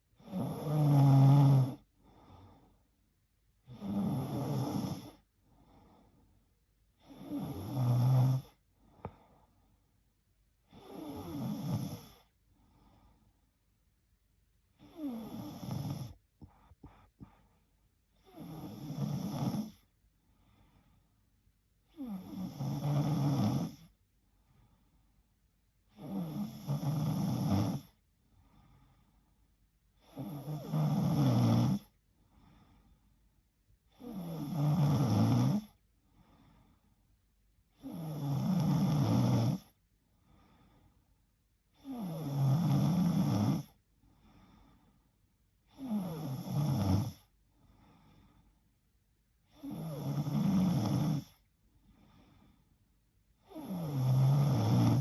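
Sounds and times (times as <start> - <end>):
woman snoring: 0.2 - 2.4, 3.6 - 5.3, 7.0 - 8.6, 10.6 - 12.3, 14.8 - 17.2, 18.2 - 19.9, 21.9 - 23.9, 25.9 - 28.0, 30.0 - 32.0, 33.9 - 35.8, 37.7 - 39.8, 41.7 - 44.6, 45.6 - 47.3, 49.5 - 52.4, 53.4 - 55.0.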